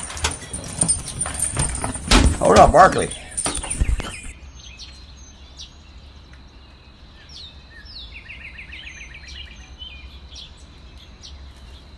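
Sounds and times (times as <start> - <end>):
songbirds chirping: 0.0 - 11.9
bird trill: 2.7 - 6.0.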